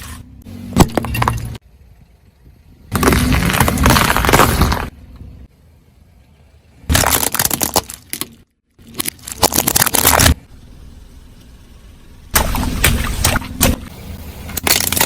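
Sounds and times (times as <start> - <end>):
objects crushed under car tyre: 2.9 - 5.0, 6.9 - 10.4, 14.5 - 15.0.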